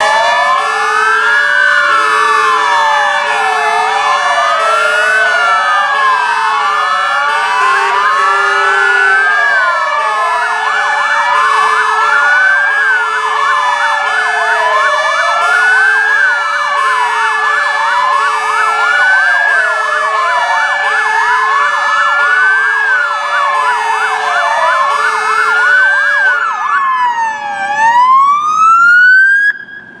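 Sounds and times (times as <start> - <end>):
fire engine sirens: 0.0 - 30.0.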